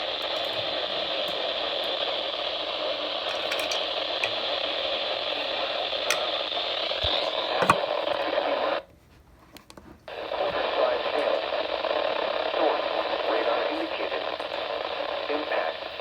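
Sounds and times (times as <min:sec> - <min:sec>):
radio static hiss: 0:00.0 - 0:09.0, 0:09.8 - 0:16.0.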